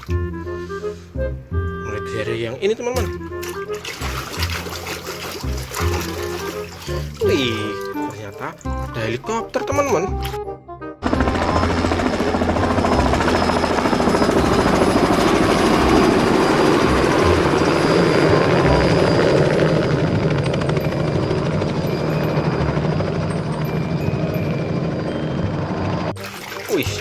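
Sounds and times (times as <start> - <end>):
helicopter rotor chop: 11.0 - 27.0.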